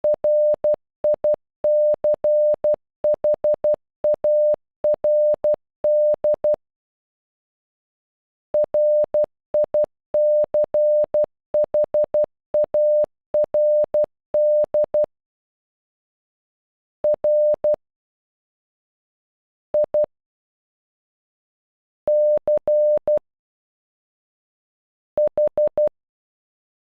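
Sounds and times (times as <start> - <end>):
morse code beeps: 0.1 - 6.6, 8.6 - 15.1, 17.1 - 17.8, 22.1 - 23.2.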